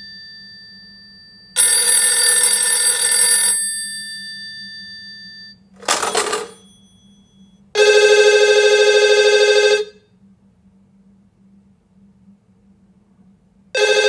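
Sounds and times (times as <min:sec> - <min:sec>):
telephone bell ringing: 0:00.0 - 0:10.0, 0:13.8 - 0:14.0.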